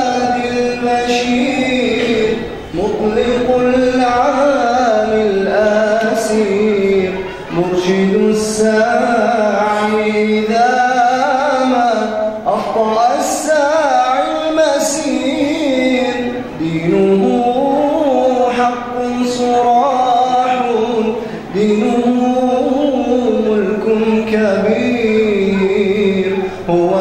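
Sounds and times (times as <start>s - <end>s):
man singing ornamented solo: 0.0s - 27.0s
singer breaths: 21.2s - 21.5s.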